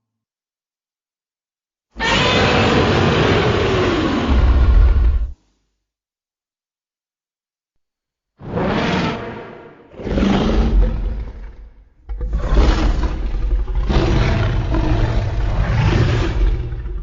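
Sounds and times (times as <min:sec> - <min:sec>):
monster roar: 0:02.0 - 0:05.4, 0:08.4 - 0:17.0.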